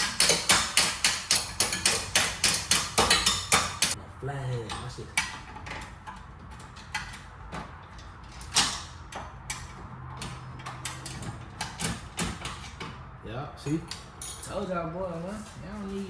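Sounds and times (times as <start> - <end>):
screwdriver clinking on metal: 0.0 - 4.0, 13.6 - 14.6.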